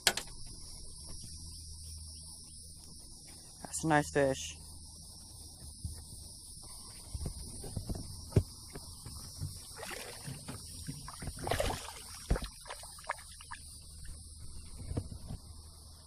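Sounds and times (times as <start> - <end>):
high-pitched insect drone: 0.1 - 16.0
knocks and rustles in a boat: 5.1 - 13.0, 13.9 - 15.8.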